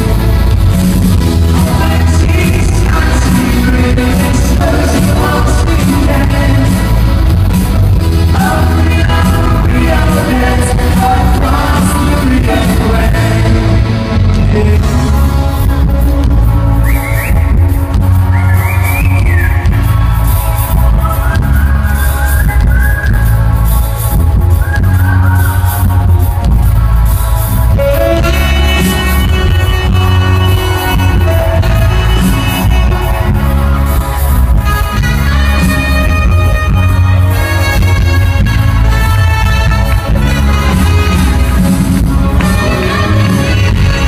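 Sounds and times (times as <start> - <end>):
heavy bass line: 0.0 - 44.0
pop-rock band playing: 0.0 - 44.0
person singing: 1.3 - 7.3, 8.1 - 16.7.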